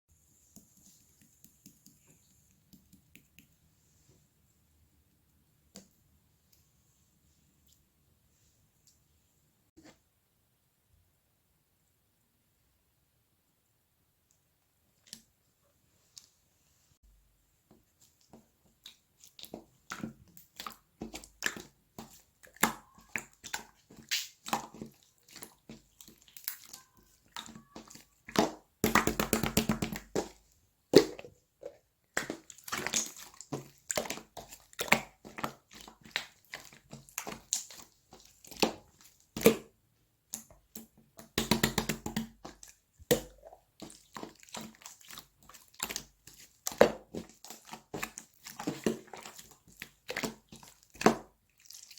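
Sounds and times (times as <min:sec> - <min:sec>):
slime squishing: 0:17.8 - 0:51.9.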